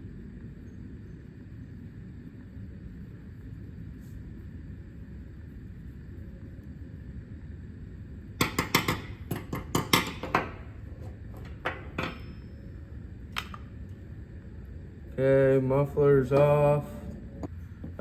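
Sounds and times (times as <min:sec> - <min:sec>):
steady low hum: 0:00.0 - 0:18.0
sharp metallic clinks and knocks: 0:11.4 - 0:12.6.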